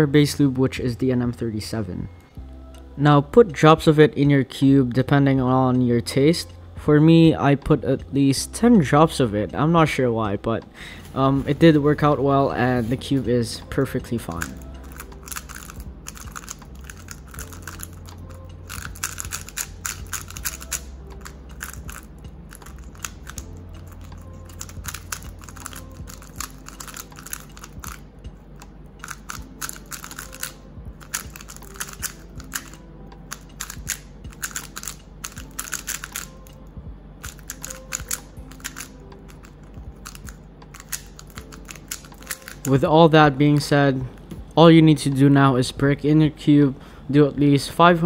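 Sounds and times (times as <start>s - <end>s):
puzzle cube plastic clicks: 14.3s - 28.0s, 29.0s - 36.3s, 37.3s - 42.8s.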